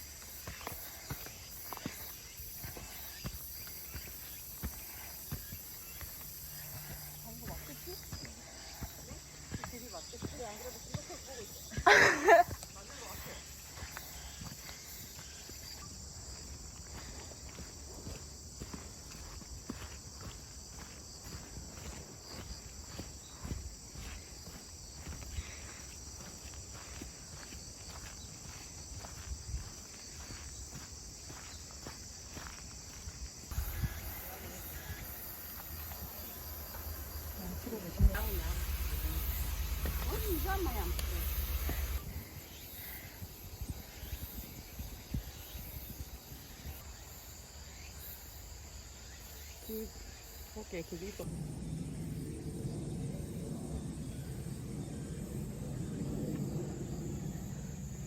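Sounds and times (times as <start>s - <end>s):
footsteps on forest path: 0.0s - 46.9s
crickets and insects chirping: 0.0s - 58.0s
low rumble: 33.5s - 42.4s, 51.2s - 58.0s.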